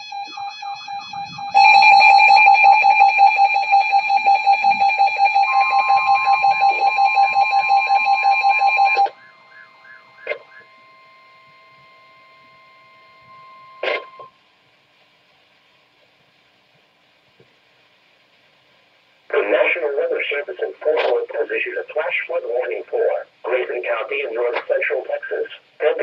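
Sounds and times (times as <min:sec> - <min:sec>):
pulsing electronic alarm tone: 0:00.0 - 0:14.3
steady high tone: 0:00.0 - 0:14.3
faint hum: 0:00.0 - 0:26.0.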